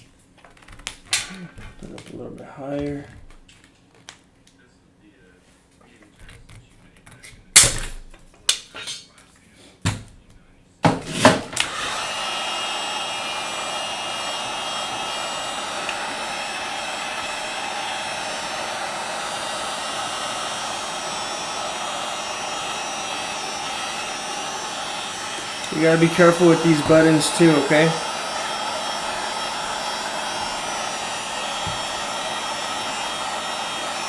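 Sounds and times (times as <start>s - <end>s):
hot-air blower blowing: 10.8s - 34.0s.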